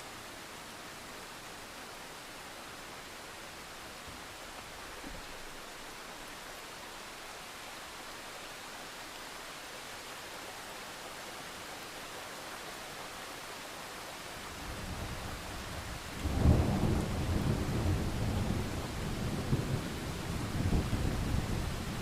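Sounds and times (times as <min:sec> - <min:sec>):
rain hissing: 0:13.8 - 0:22.0
thunder crack and rumble: 0:16.2 - 0:22.0.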